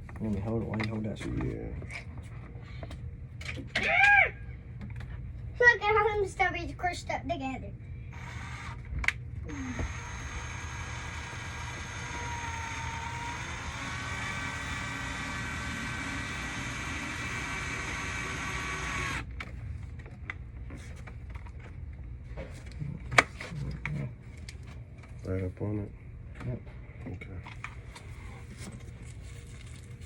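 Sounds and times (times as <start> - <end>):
power drill whining: 8.1 - 8.8, 9.5 - 19.3.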